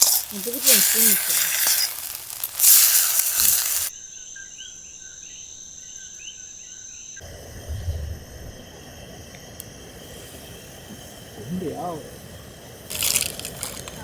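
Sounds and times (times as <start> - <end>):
food sizzling on a grill: 0.0 - 3.9, 7.2 - 14.0
outdoor hiss: 0.0 - 3.9, 7.2 - 14.0
high insect drone: 0.0 - 14.0
low rumble: 7.2 - 12.9.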